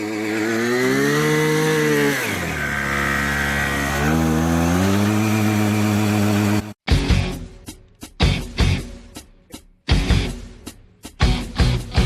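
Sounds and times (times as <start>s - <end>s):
small gasoline engine revving: 0.0s - 6.8s.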